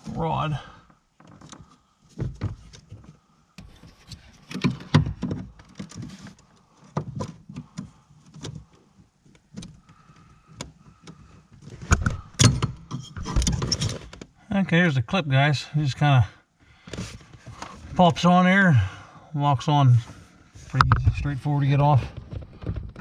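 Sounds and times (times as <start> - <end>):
clicks and knocks: 20.8 - 21.3.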